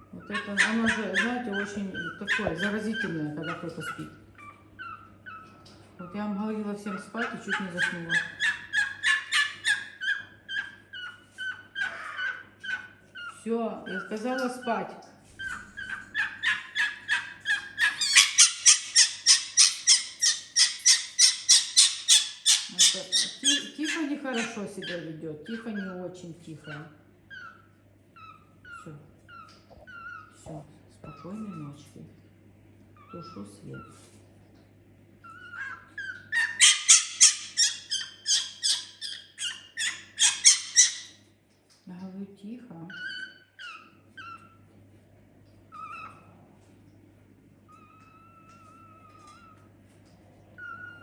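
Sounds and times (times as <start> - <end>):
fox yipping: 0.3 - 5.6, 7.2 - 13.4, 15.4 - 25.8, 35.2 - 41.2, 42.9 - 44.6, 45.7 - 46.3, 47.7 - 49.7, 50.6 - 51.0.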